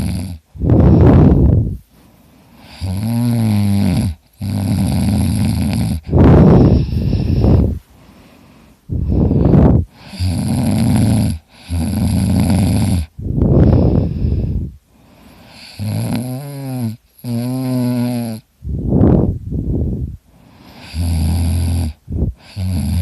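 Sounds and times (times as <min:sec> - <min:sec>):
person snoring loudly: 0:00.0 - 0:01.6, 0:02.6 - 0:07.7, 0:09.0 - 0:14.7, 0:15.5 - 0:18.4, 0:20.6 - 0:23.0.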